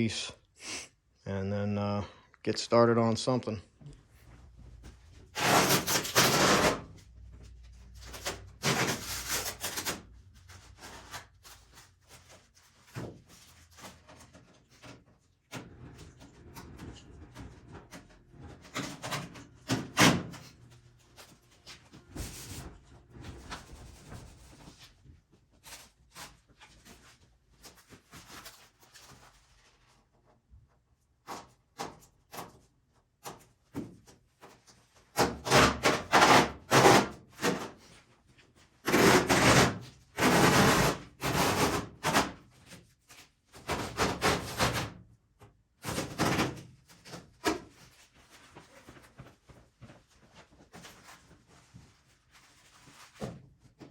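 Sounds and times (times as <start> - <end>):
hands rubbing and scraping fiberglass: 5.4 - 6.9.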